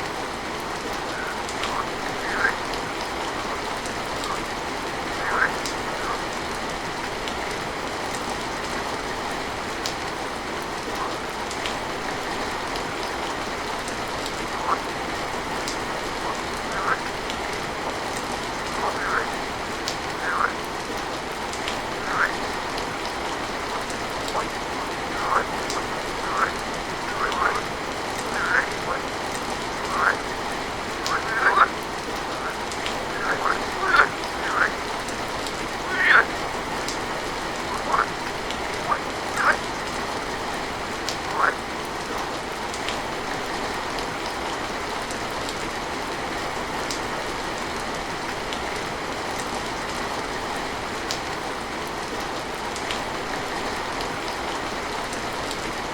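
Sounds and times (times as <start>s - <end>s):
raindrops ticking on a surface: 0.0s - 55.9s
steady rain falling: 0.0s - 55.9s.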